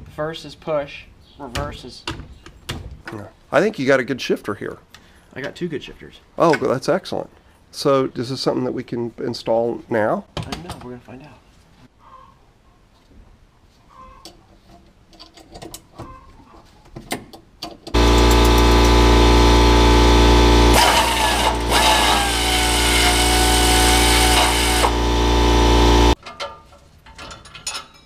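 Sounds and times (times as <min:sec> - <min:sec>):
power tool running: 0:18.0 - 0:26.2.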